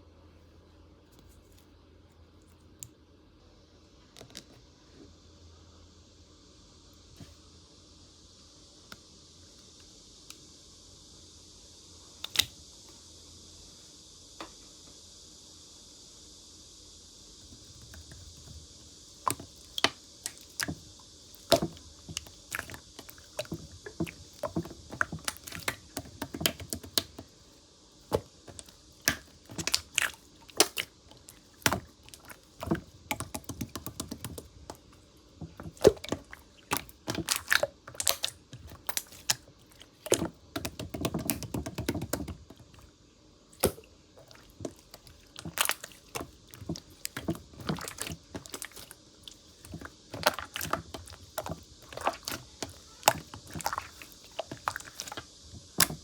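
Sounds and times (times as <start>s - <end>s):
slime clicking and popping: 21.4s - 27.2s, 28.1s - 34.8s, 35.5s - 39.4s, 40.0s - 42.6s.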